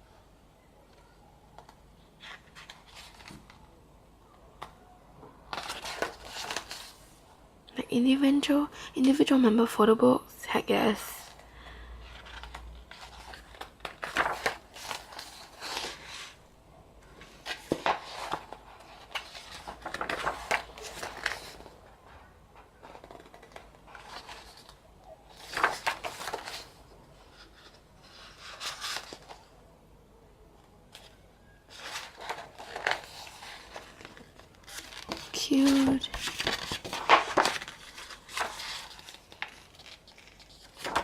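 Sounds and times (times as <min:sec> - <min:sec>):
paper rustling: 0:01.0 - 0:03.7, 0:05.5 - 0:07.0, 0:12.0 - 0:16.4, 0:17.1 - 0:21.8, 0:22.5 - 0:29.5, 0:30.9 - 0:41.0.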